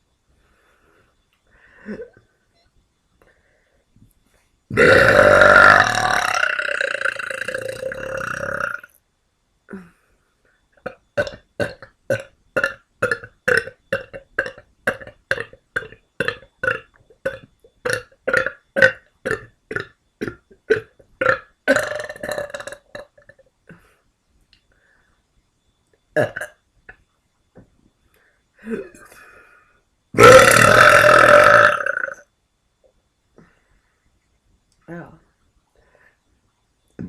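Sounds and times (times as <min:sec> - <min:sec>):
person burping: 0:01.8 - 0:02.2, 0:04.7 - 0:08.9, 0:10.8 - 0:23.9, 0:26.2 - 0:27.0, 0:28.6 - 0:29.3, 0:30.2 - 0:32.2.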